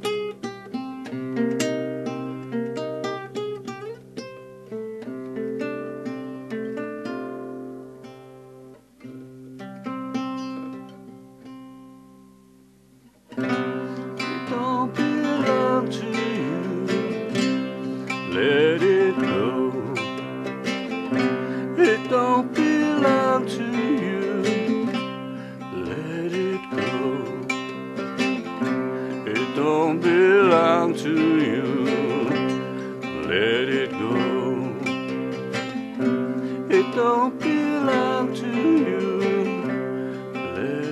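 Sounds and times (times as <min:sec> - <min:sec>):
acoustic guitar picking: 0:00.0 - 0:12.4, 0:13.0 - 0:40.9.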